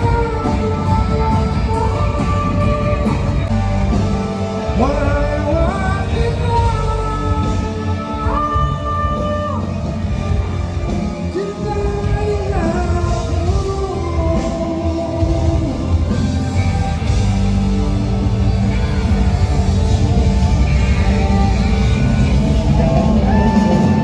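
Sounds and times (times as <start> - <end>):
bass guitar: 0.0 - 24.0
drum kit: 0.0 - 24.0
rock band playing live: 0.0 - 24.0
sliding melody line: 10.8 - 24.0.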